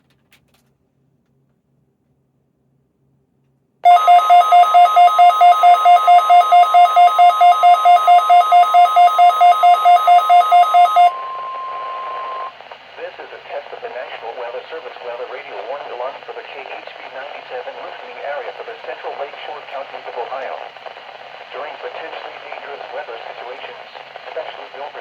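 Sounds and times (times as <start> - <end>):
steady alarm tone: 3.9 - 12.5
radio static: 5.9 - 25.0.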